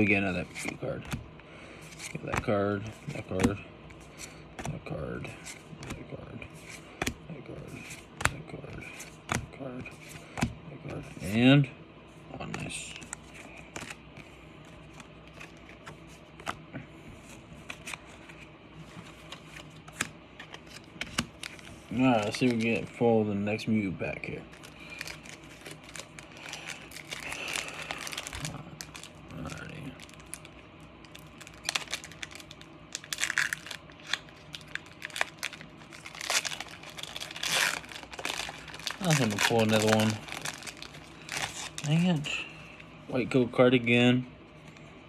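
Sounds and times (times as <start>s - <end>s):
trading cards clicking and rustling: 0.0s - 1.2s, 1.8s - 11.4s, 12.4s - 16.6s, 17.3s - 23.0s, 24.5s - 42.3s
foil wrapper crinkling and tearing: 21.3s - 23.0s, 24.5s - 42.3s.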